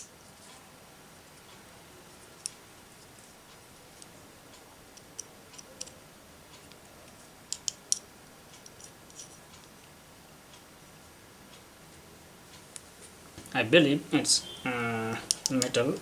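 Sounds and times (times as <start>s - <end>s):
small device clicks and taps: 15.2s - 15.8s.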